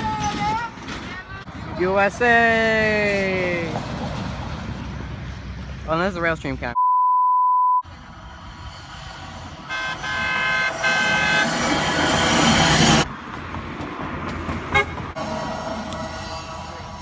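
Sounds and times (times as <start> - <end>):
train rumble: 0.0 - 6.2, 7.8 - 17.0
train noise: 0.0 - 6.4, 7.8 - 17.0
train horn blasts: 9.6 - 13.0, 14.7 - 16.7.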